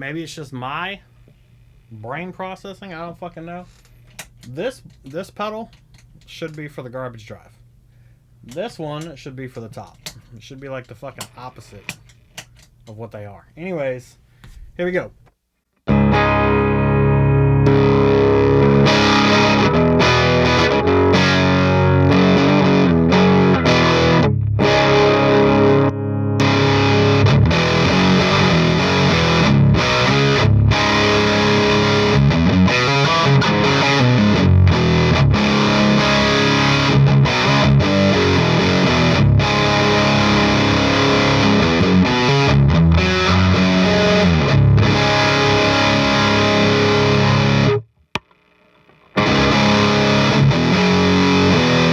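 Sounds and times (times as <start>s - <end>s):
distorted electric guitar riffs: 15.9s - 47.9s, 49.1s - 51.9s.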